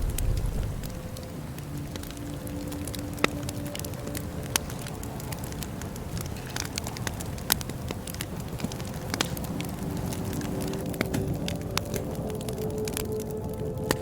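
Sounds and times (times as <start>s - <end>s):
low rumble of burning: 0.0s - 14.0s
wood fire pops and snaps: 0.0s - 14.0s.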